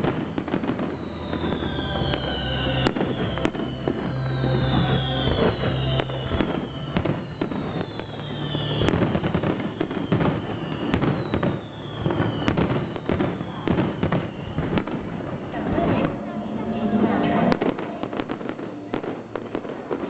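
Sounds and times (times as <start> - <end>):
falling firework whistles: 0.0 - 20.0
fireworks bangs and crackles: 0.0 - 20.0.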